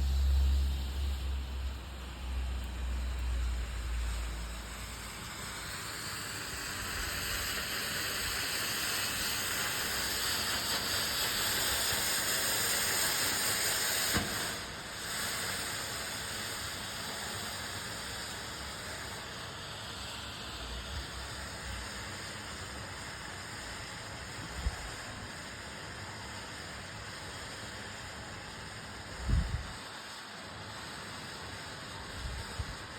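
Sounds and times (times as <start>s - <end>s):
smoke bomb hissing: 0.0s - 32.9s.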